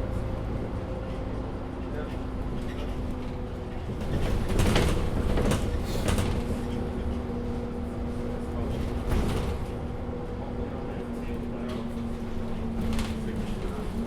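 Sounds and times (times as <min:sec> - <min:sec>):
bus engine hum: 0:00.0 - 0:14.0
clattering knocks and rattles: 0:03.8 - 0:07.2.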